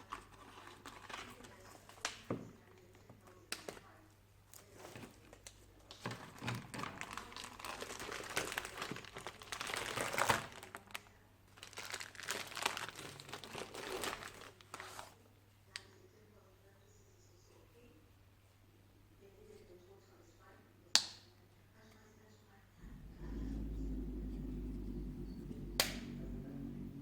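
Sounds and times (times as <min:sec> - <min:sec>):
crinkly material rustling: 0:00.0 - 0:02.3, 0:04.5 - 0:15.2.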